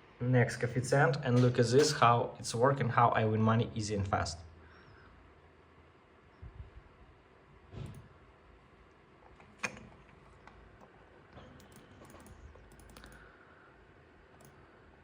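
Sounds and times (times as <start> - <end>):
low background hum: 0.0 - 15.0
faint typing clicks and taps: 8.9 - 13.4, 14.2 - 15.0.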